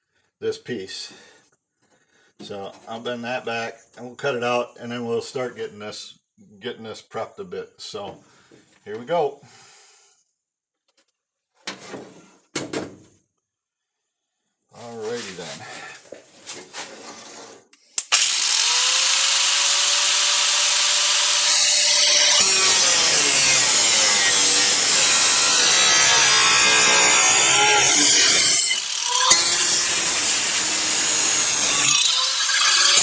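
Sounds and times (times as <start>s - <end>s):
electric grinder cutting sheet metal: 18.0s - 33.0s.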